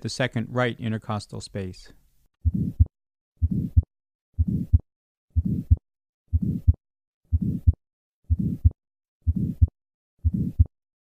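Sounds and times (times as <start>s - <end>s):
heartbeat with whooshing murmur: 2.4s - 10.7s.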